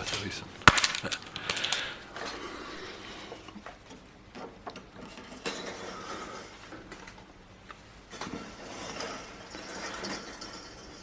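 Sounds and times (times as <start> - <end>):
wire elements clicking: 0.0 - 2.9.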